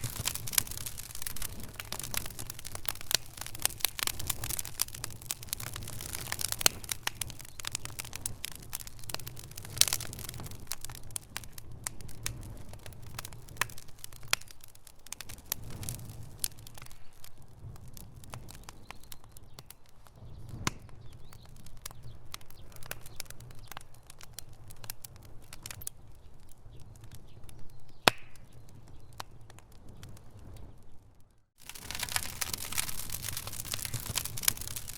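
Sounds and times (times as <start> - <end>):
wood fire crackling: 0.0 - 34.9.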